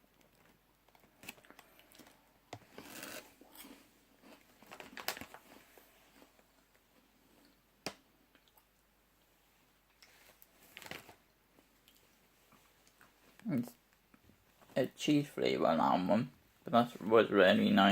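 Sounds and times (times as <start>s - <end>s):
snack packet crinkling: 4.6s - 5.6s, 10.1s - 11.2s.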